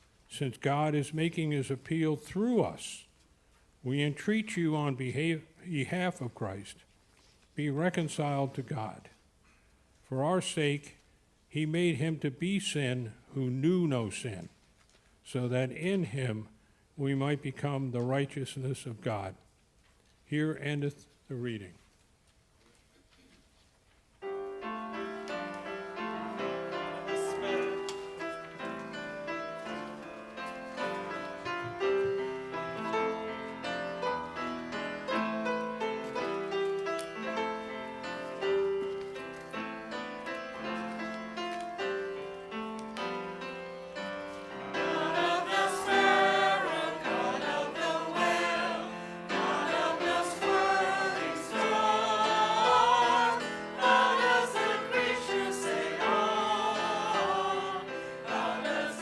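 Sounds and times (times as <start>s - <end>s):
hymn on keyboard: 24.9s - 30.2s, 44.6s - 59.0s
group of voices singing: 26.3s - 28.1s, 44.7s - 59.0s.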